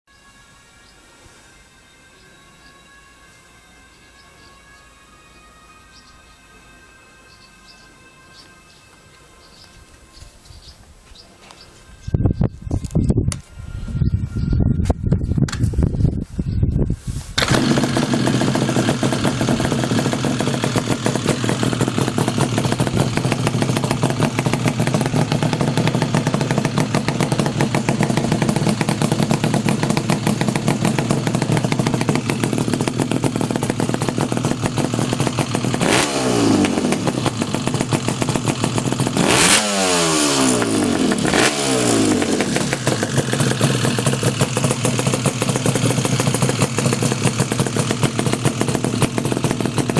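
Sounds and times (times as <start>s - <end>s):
engine revving: 17.4s - 49.9s
two-stroke motorcycle engine running: 17.4s - 49.9s.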